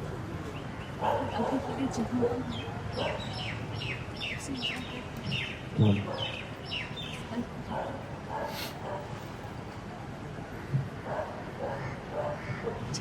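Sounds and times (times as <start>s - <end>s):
bird chirping: 2.4s - 7.3s.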